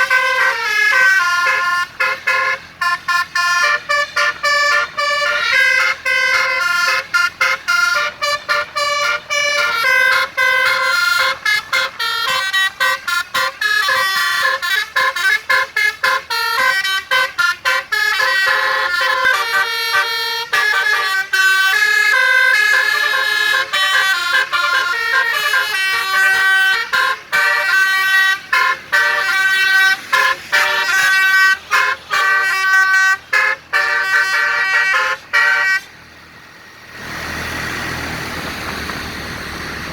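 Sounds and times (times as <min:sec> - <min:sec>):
bus musical horn melody: 0:00.0 - 0:36.2.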